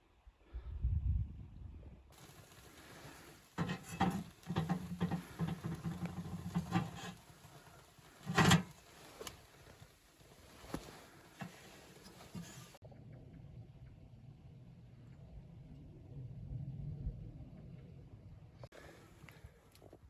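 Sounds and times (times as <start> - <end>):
knocks and scrapes of handling: 2.2 - 12.8.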